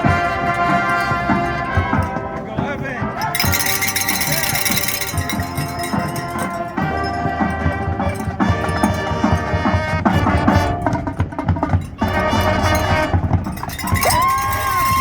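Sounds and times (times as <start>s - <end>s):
brass chords: 0.0s - 5.0s, 5.6s - 11.4s, 12.0s - 13.8s.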